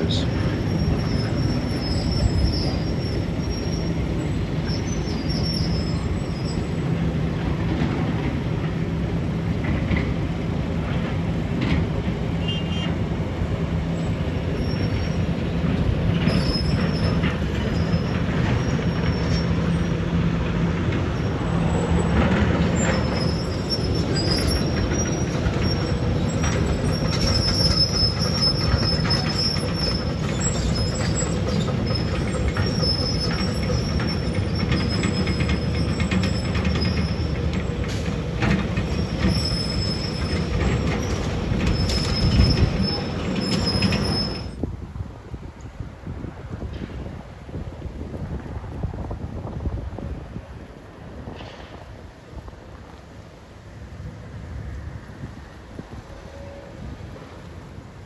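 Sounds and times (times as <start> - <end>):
high metallic squeals: 0.0 - 6.9, 16.2 - 20.0, 21.2 - 44.6
heavy demolition equipment running: 14.5 - 44.4.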